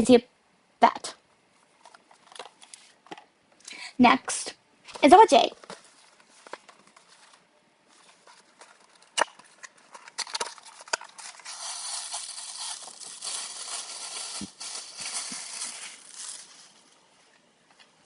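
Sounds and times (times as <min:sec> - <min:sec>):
plastic packaging rustling and crinkling: 0:05.4 - 0:17.4
plastic packaging clicks: 0:08.8 - 0:16.5.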